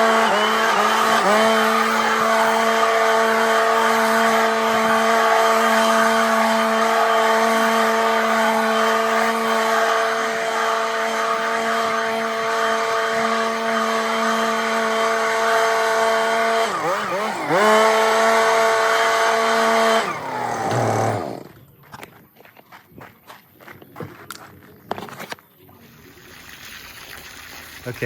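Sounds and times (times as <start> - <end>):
motor humming: 0.0 - 21.8.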